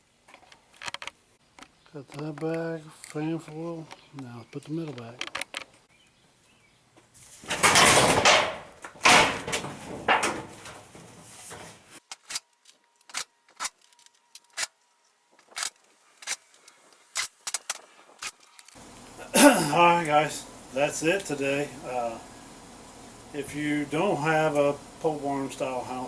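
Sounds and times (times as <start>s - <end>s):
insulation rustling and scraping: 7.0s - 12.8s
light clicks and knocks: 7.5s - 11.8s.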